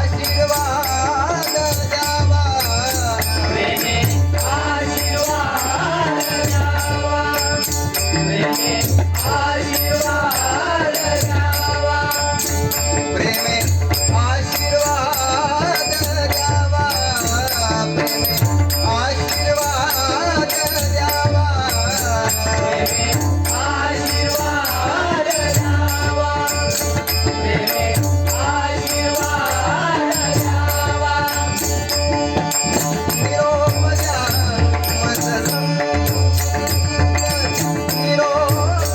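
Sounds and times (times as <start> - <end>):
jingling cymbals: 0.0 - 38.9
voices singing: 0.0 - 38.9.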